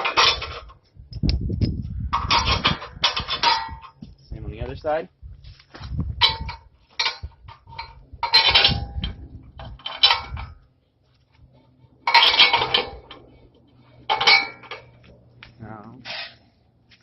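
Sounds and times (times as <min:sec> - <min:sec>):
metal clinking and rattling: 0:00.0 - 0:04.1, 0:06.2 - 0:10.7, 0:11.5 - 0:15.3
metal ring: 0:00.0 - 0:04.1, 0:06.2 - 0:10.7, 0:12.0 - 0:15.1.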